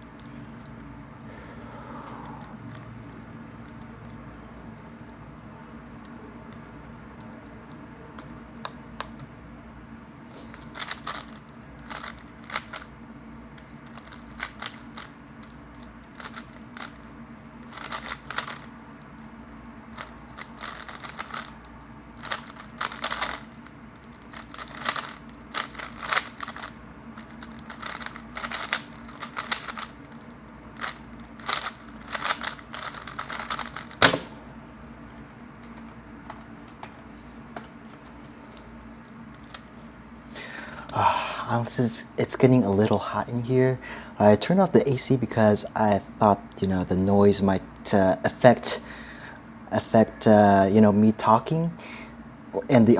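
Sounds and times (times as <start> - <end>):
puzzle cube clicking and rattling: 2.4 - 5.2, 10.5 - 19.3, 19.9 - 34.3, 39.3 - 39.9.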